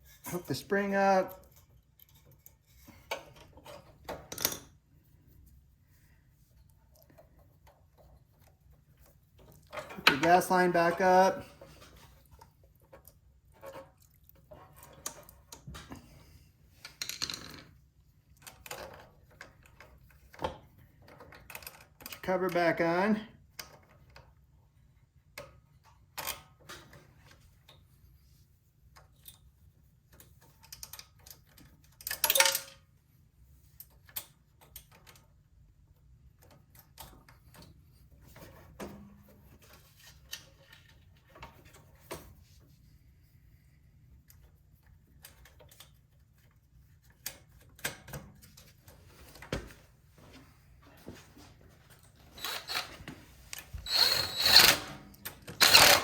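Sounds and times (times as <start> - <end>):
hand tools and parts clattering: 51.2 - 56.0.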